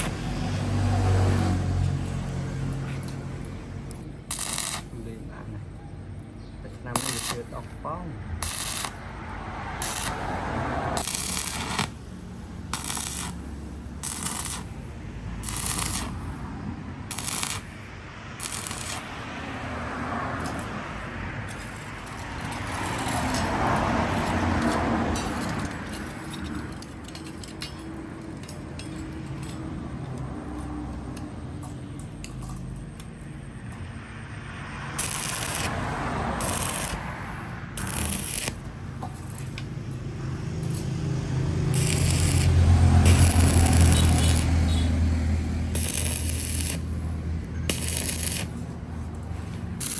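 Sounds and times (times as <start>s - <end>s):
metal scraping on metal: 0.0s - 5.5s, 8.4s - 49.9s
metal clanks: 20.4s - 34.0s.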